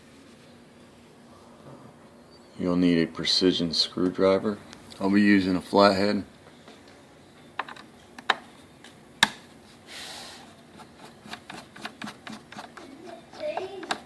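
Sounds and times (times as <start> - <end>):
screw scraping: 10.7 - 14.0.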